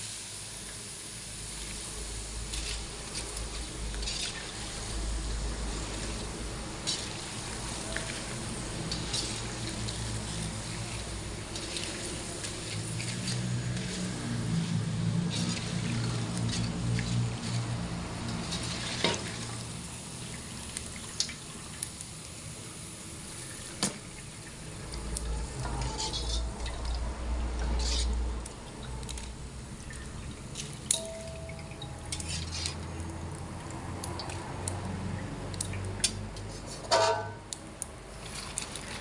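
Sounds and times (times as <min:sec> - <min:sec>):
water dripping and splashing: 0:01.5 - 0:36.5, 0:37.5 - 0:39.0
utensils and dishes clinking: 0:25.6 - 0:27.0, 0:30.6 - 0:32.8, 0:36.6 - 0:37.4.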